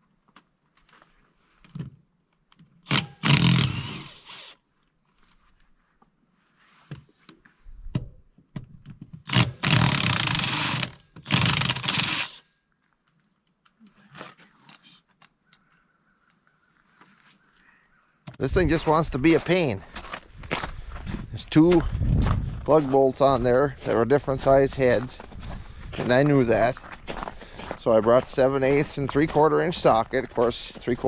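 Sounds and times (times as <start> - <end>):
impact wrench bursts: 2.8 - 4.6, 9.2 - 12.5.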